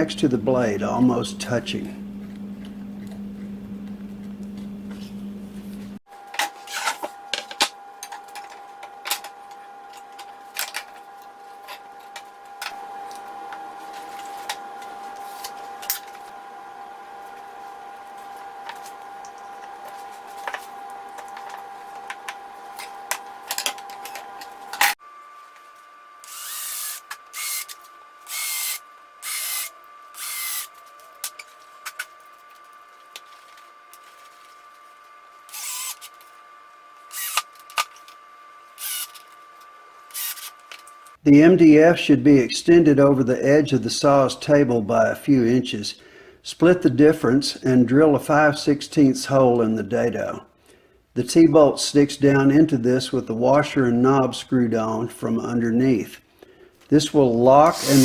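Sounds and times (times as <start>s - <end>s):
steady hum: 0.0s - 58.0s
loud rasping strokes: 57.6s - 58.0s.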